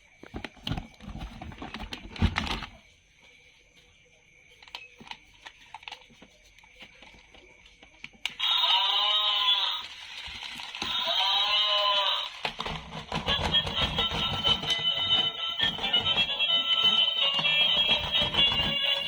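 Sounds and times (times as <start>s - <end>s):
plastic packaging rustling: 9.9s - 19.0s.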